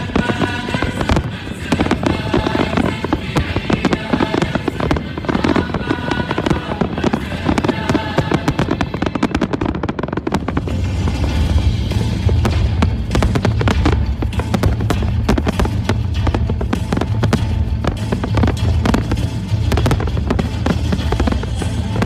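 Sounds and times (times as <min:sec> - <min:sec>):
deep rumble: 0:00.0 - 0:22.0
fireworks bangs and crackles: 0:00.0 - 0:22.0.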